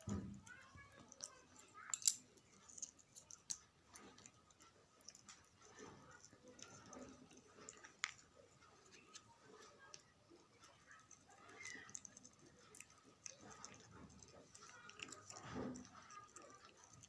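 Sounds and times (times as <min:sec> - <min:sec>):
puppy chewing food: 0:00.0 - 0:17.0.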